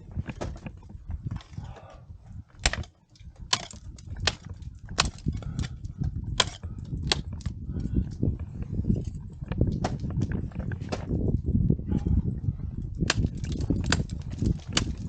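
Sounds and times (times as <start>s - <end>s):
steady low rumble: 0.0s - 15.0s
ice tools striking ice: 3.5s - 5.7s, 6.4s - 7.3s, 13.1s - 15.0s.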